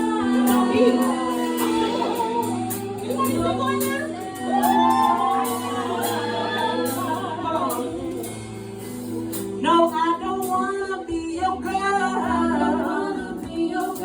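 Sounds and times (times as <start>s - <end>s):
steady beat: 0.0s - 9.6s
wordless vocal melody: 0.0s - 14.0s.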